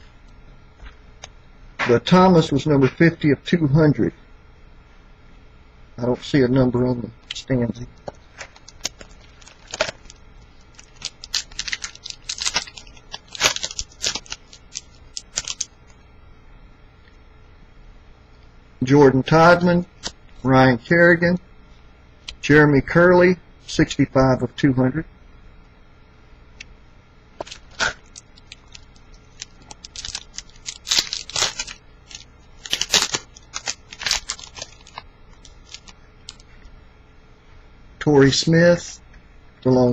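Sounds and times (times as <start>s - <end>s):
cards being handled: 8.0s - 15.8s, 27.4s - 36.5s
wrapper tearing and crinkling: 8.3s - 15.8s, 27.4s - 36.5s.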